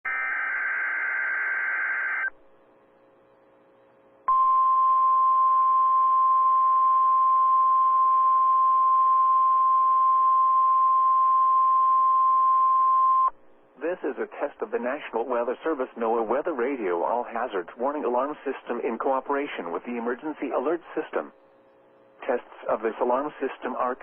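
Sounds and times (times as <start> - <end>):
buzzing data tones: 0.1 - 2.3.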